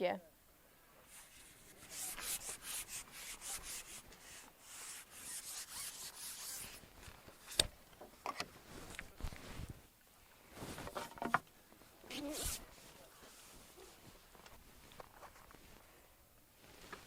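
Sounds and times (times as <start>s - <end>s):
scratchy rubbing strokes: 1.1s - 7.6s, 12.1s - 14.1s.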